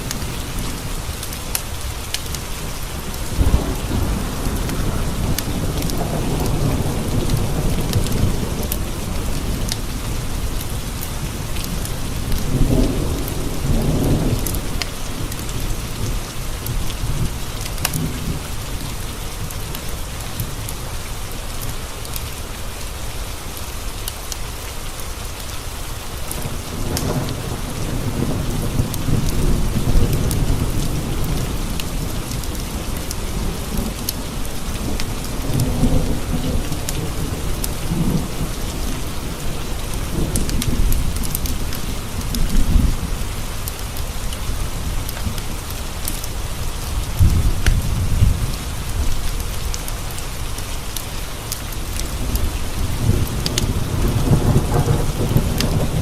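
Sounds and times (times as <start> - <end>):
steady rain: 0.0 - 56.0
thunder rolling: 2.9 - 10.6, 52.0 - 56.0.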